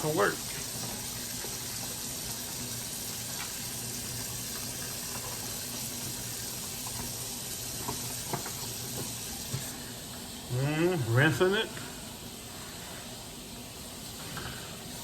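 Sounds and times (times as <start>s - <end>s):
tap running into sink: 7.7s - 9.7s.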